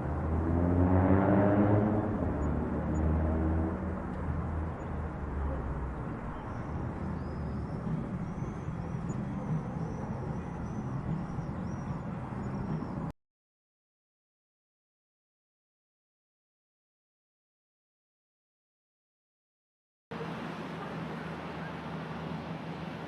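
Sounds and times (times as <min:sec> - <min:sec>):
road noise: 0:00.0 - 0:13.1, 0:20.1 - 0:23.0
vehicle engine rumble: 0:00.0 - 0:13.1, 0:20.1 - 0:23.0.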